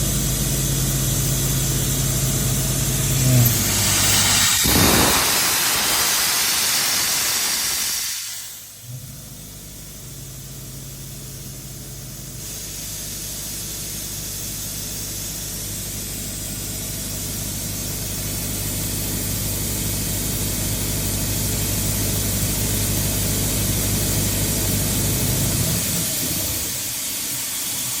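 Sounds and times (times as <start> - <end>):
compressor engine running: 0.0 - 28.0
air hissing: 3.1 - 8.8, 12.2 - 14.0
loud rush of air: 3.2 - 8.7.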